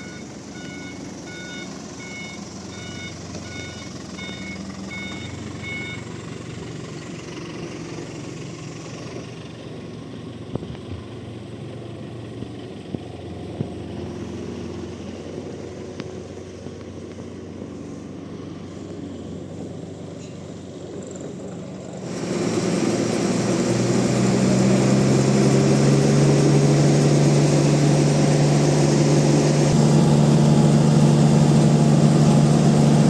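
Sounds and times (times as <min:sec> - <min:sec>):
reversing beeper: 0:00.0 - 0:06.2, 0:22.9 - 0:33.0
heavy vehicle engine running: 0:00.0 - 0:33.0.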